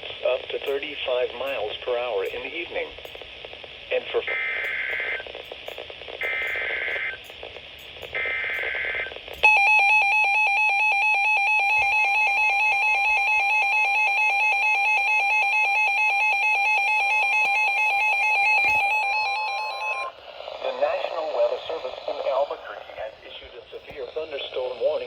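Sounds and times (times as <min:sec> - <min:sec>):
buzzy data burst screech: 0:06.2 - 0:07.3.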